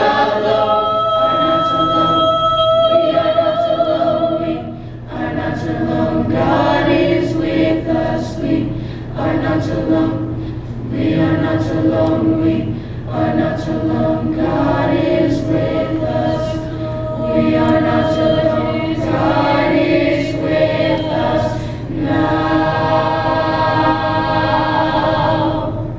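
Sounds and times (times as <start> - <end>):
choir singing: 0.0 - 25.9.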